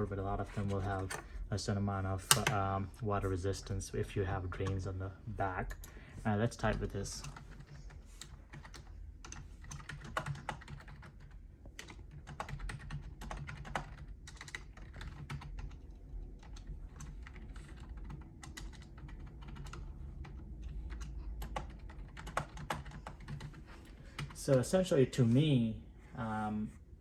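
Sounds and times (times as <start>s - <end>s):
keyboard typing clicks: 2.3s - 2.6s, 16.4s - 23.6s.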